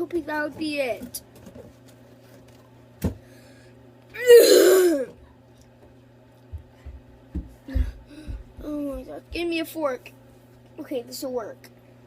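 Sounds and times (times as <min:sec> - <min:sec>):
boy gagging: 0:04.2 - 0:05.2.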